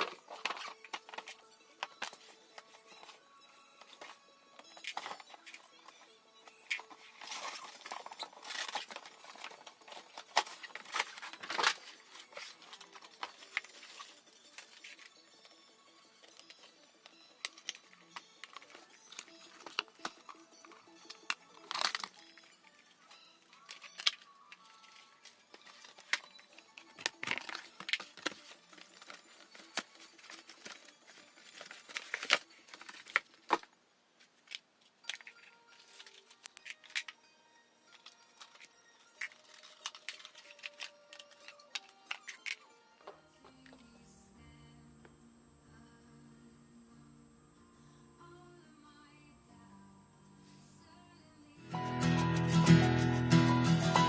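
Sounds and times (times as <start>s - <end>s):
packaging crinkling and rustling: 0.0s - 3.2s, 6.5s - 15.2s, 16.2s - 22.8s, 23.5s - 37.2s, 37.9s - 42.6s
faint background music: 0.0s - 54.0s.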